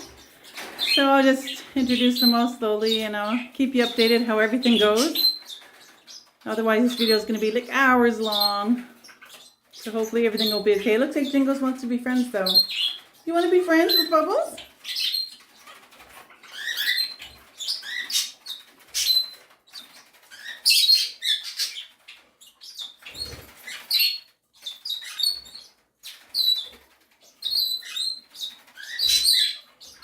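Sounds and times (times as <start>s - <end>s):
cockatiels chirping and whistling: 16.4s - 30.0s.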